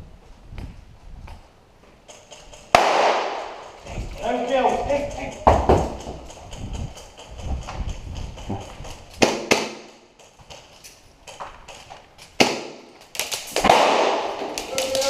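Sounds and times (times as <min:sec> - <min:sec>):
airsoft gunfire cracks: 0:02.7 - 0:03.6, 0:12.4 - 0:13.0, 0:13.6 - 0:14.7.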